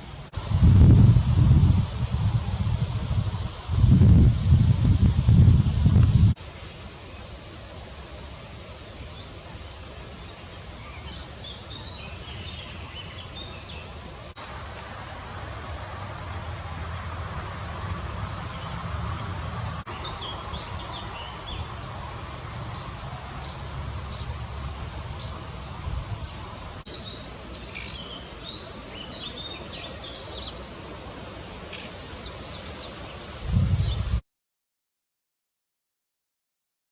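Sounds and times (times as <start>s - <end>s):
songbirds singing: 0.0s - 7.3s, 9.1s - 14.8s, 18.3s - 34.2s
wind with low rumble: 0.0s - 34.2s.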